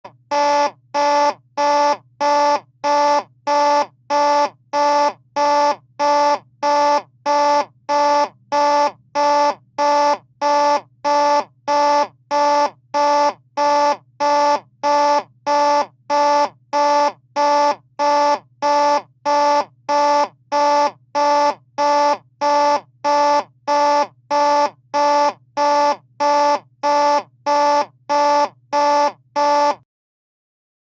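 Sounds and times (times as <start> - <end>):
buzzy fire alarm horn blasts: 0.1 - 29.8.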